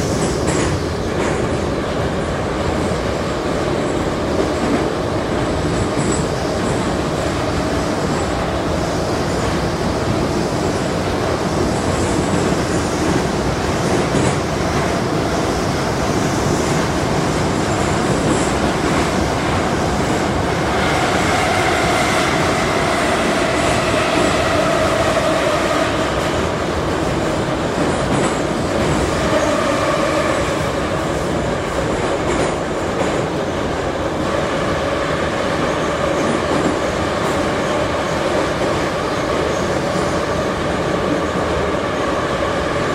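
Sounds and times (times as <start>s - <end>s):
metro train rumbling in tunnel: 0.0s - 42.9s
train whine: 0.0s - 42.9s.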